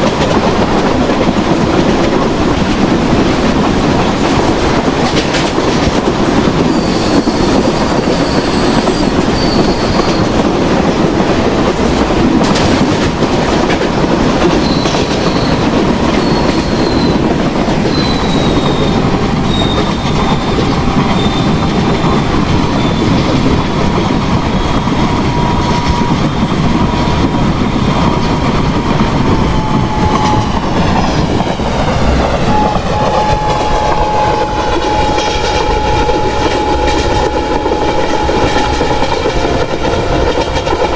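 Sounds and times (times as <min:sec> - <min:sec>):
train wheels clattering on rails: 0:00.0 - 0:40.9
wheels squealing: 0:14.6 - 0:23.4.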